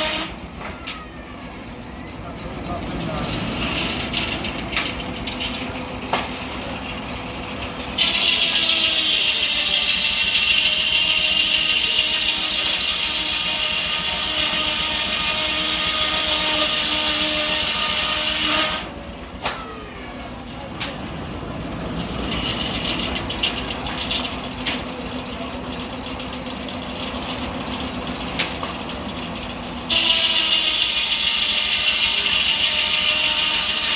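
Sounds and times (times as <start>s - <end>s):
circular saw blade cutting log: 0.0s - 1.0s, 2.8s - 20.1s, 29.8s - 33.9s
high-pitched rasping whine: 1.6s - 33.9s.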